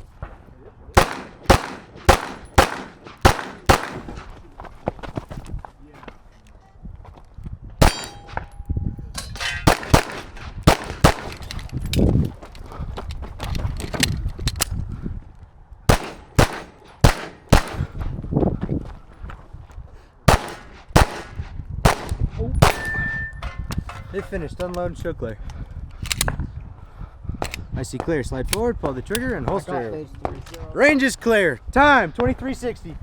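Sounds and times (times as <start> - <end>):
sharp pistol shots: 1.0 - 4.4, 7.8 - 8.5, 9.6 - 11.7, 15.9 - 18.0, 20.3 - 23.3.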